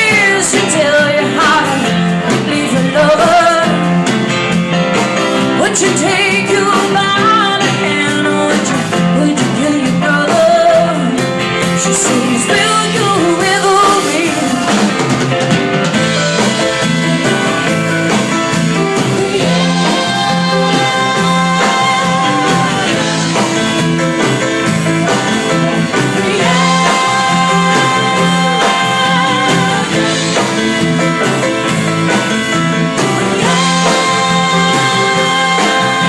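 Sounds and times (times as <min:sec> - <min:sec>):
drums: 0:00.0 - 0:36.0
wavering lead guitar notes: 0:00.0 - 0:36.0
repeating bass line: 0:13.6 - 0:36.0.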